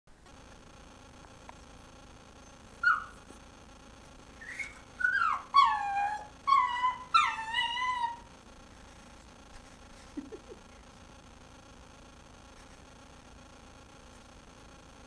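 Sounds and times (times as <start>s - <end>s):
dog whining: 2.4s - 3.3s, 4.4s - 8.3s.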